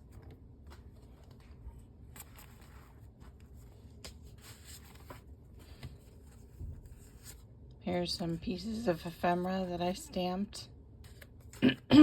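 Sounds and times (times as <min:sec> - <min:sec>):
paper pages rustling: 0:00.0 - 0:07.6, 0:11.0 - 0:11.6.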